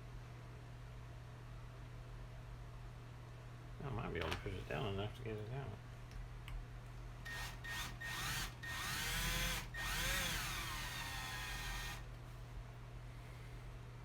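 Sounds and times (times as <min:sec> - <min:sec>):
power drill running in bursts: 0:07.3 - 0:12.0.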